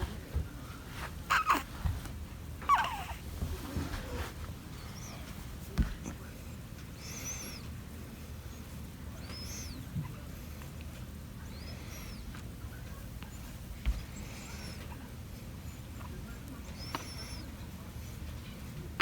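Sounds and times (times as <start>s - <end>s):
baby squeaky breathing: 1.3s - 1.6s
soft bump: 5.6s - 6.2s.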